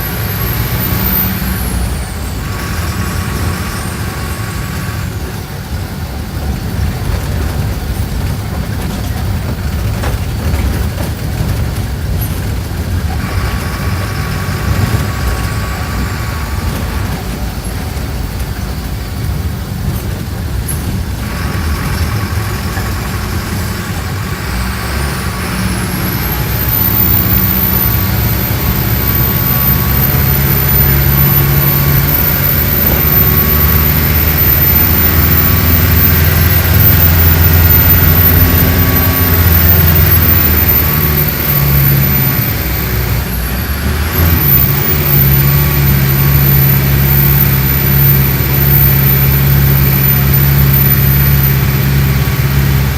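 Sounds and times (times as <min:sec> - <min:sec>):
bus diesel engine running: 0:00.0 - 0:52.9
high whistle: 0:24.5 - 0:43.3, 0:44.1 - 0:52.8.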